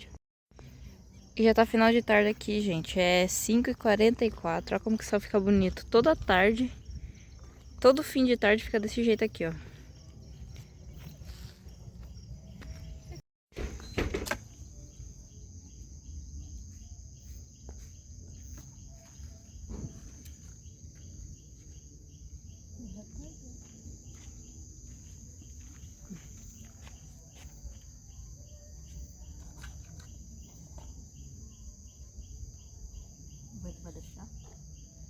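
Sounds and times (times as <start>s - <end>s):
crickets trilling: 0.6s - 35.0s
insect pulsing chirps: 13.9s - 35.0s.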